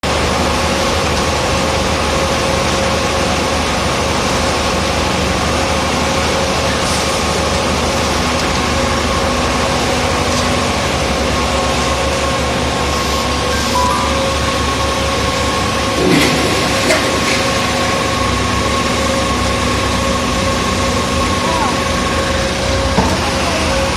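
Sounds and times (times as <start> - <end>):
diesel engine running: 0.0 - 23.9
steady whine: 10.7 - 23.9.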